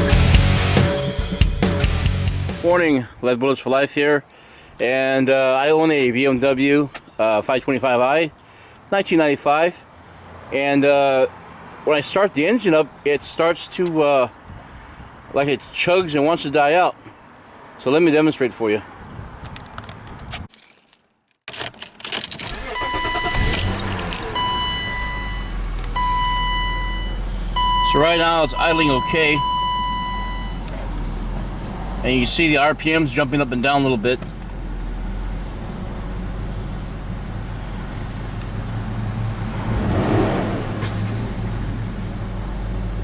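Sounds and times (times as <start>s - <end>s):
keys jangling: 19.8s - 24.6s
car engine starting and idling: 21.6s - 43.0s
car warning tone beeps: 22.6s - 30.7s.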